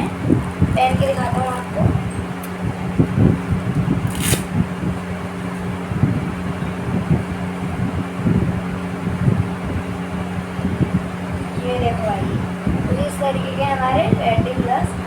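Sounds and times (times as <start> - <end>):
electric fan hum: 0.0 - 15.0
gloves rustling: 4.0 - 4.5
brief rasp: 4.1 - 4.5.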